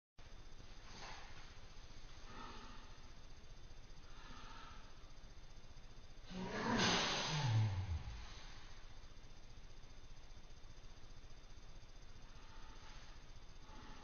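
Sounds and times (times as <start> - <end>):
slow motion sneeze: 6.3 - 8.3.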